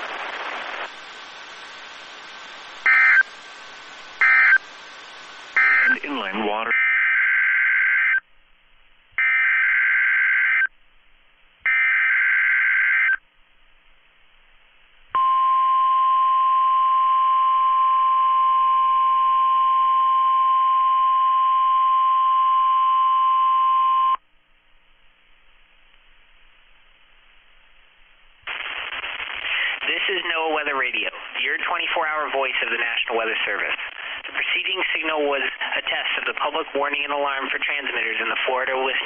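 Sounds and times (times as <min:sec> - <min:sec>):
steady warning alarm tone: 0:02.8 - 0:03.2, 0:04.2 - 0:04.7, 0:05.6 - 0:08.2.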